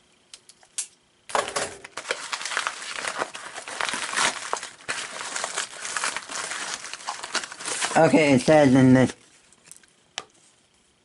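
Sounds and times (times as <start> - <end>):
packaging crinkling: 1.3 - 9.9.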